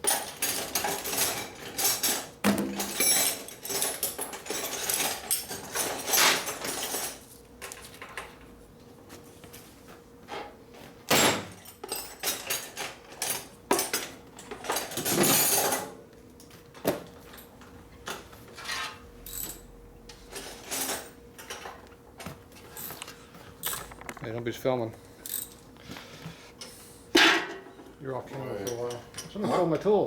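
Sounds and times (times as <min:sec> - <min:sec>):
metal tools clicking and clanking: 0:00.0 - 0:08.3, 0:11.6 - 0:16.5, 0:25.2 - 0:25.6, 0:28.3 - 0:29.9
metal parts rattling: 0:00.1 - 0:07.2, 0:25.2 - 0:25.6.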